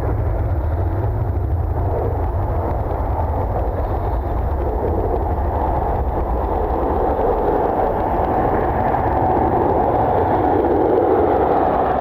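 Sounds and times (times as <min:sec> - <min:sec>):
jet engines roaring: 0:00.0 - 0:12.0
wind rumble on microphone: 0:00.0 - 0:12.0.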